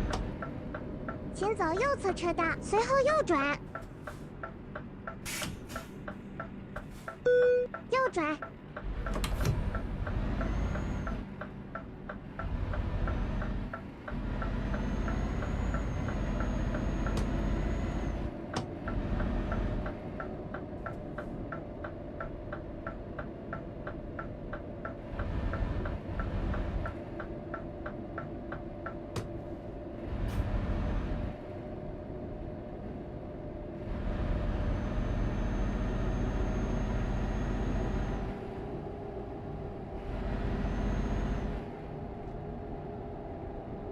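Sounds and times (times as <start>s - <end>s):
turn signal ticking: 0.0s - 5.2s, 6.0s - 29.4s
truck engine rumble: 0.0s - 43.9s.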